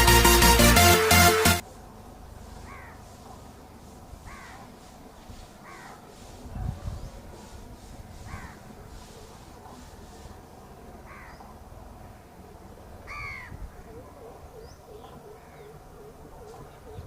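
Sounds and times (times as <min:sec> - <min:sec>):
crows cawing: 0:02.7 - 0:03.1, 0:04.3 - 0:04.7, 0:05.6 - 0:06.0, 0:08.3 - 0:08.6, 0:11.1 - 0:11.4, 0:13.1 - 0:13.6.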